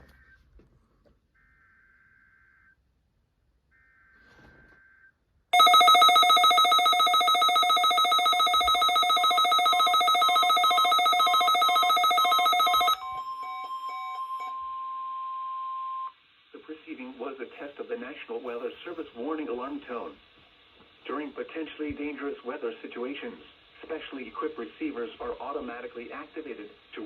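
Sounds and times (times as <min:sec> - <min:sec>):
rapidly pulsing alarm: 0:01.3 - 0:15.2
steady warning tone: 0:03.8 - 0:16.2.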